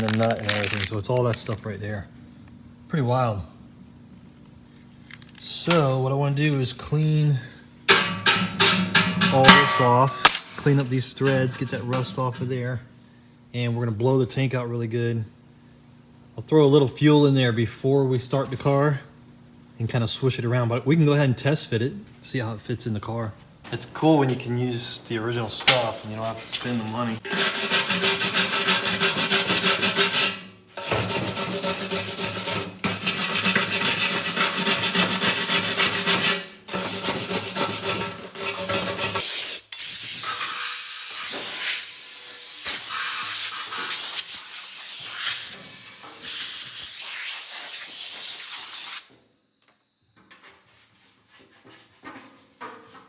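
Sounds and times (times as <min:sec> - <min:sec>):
scratching on metal: 0:26.3 - 0:39.4
harsh hissing scrub: 0:39.2 - 0:49.1.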